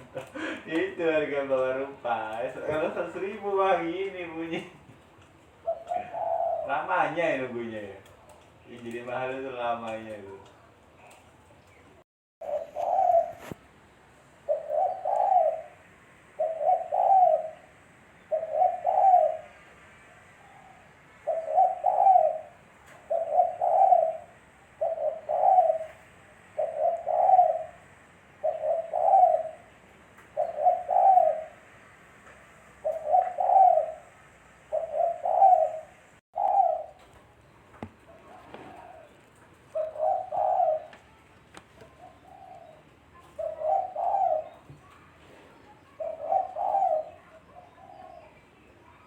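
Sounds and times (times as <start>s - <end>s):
faint bird chirping: 0.0s - 49.0s
dove cooing: 5.6s - 8.4s, 12.4s - 13.7s, 14.4s - 31.7s, 32.8s - 49.0s.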